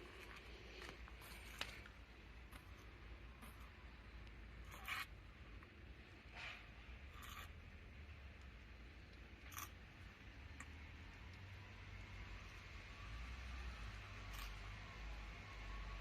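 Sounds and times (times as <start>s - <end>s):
faint scrapes or rustles: 0.0s - 3.8s, 4.6s - 5.2s, 6.2s - 7.6s.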